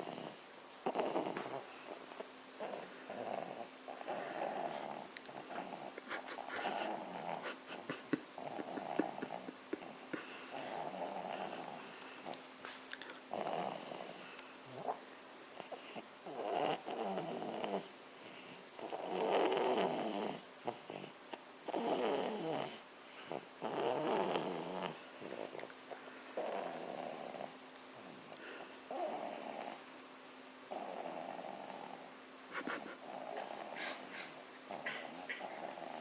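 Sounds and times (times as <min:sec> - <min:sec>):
baby snoring: 0:00.0 - 0:01.7, 0:02.6 - 0:07.6, 0:08.4 - 0:11.8, 0:13.3 - 0:14.2, 0:15.6 - 0:17.9, 0:18.8 - 0:25.6, 0:26.4 - 0:27.6, 0:28.9 - 0:29.8, 0:30.7 - 0:32.1, 0:32.9 - 0:36.0.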